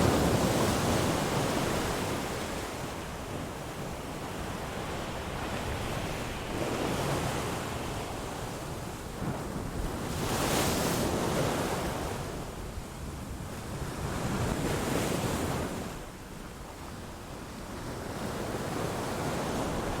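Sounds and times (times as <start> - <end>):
sea waves breaking on shore: 0.0 - 12.6
wind rumble on microphone: 0.0 - 20.0.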